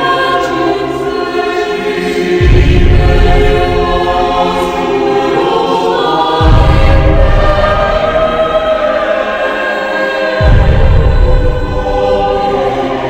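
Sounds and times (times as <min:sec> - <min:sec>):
choir singing held notes: 0:00.0 - 0:13.0
deep low swell: 0:06.4 - 0:09.4, 0:10.4 - 0:13.0.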